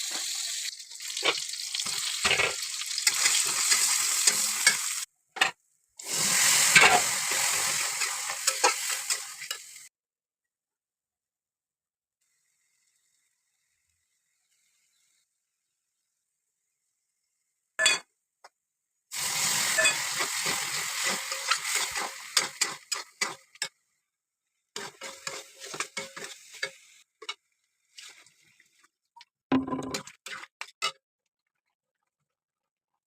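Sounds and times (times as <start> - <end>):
food sizzling in a hot pan: 0.0 - 5.1, 6.0 - 9.9, 19.1 - 23.9, 24.8 - 28.9
spoon stirring and clinking on pan: 24.8 - 27.4.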